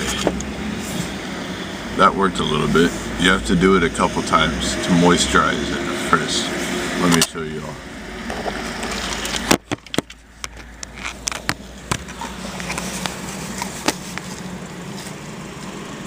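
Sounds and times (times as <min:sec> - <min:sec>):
car engine idling: 0:00.0 - 0:16.0
clicks and crackles: 0:08.3 - 0:14.5.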